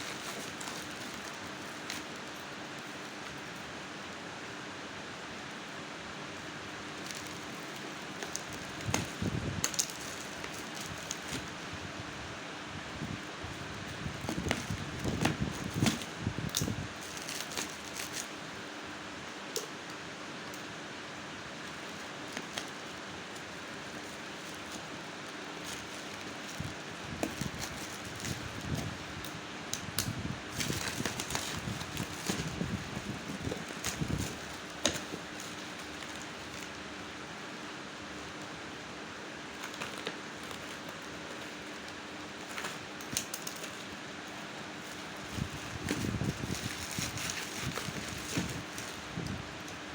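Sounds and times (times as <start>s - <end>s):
packaging crinkling and clicking: 0.0s - 3.6s, 6.9s - 11.6s, 14.1s - 18.5s, 21.6s - 36.9s, 39.4s - 49.8s
steady background hiss: 0.0s - 49.9s.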